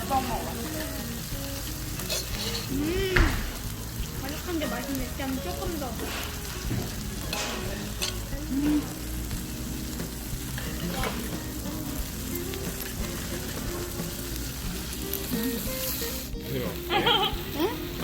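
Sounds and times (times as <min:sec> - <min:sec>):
meat sizzling on a grill: 0:00.0 - 0:18.0.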